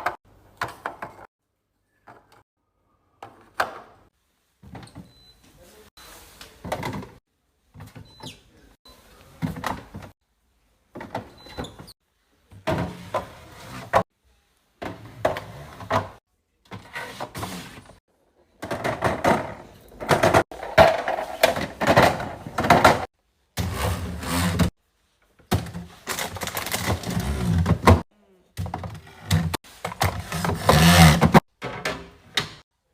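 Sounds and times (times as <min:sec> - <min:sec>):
plastic containers clattering: 0:18.6 - 0:23.1, 0:25.5 - 0:28.0.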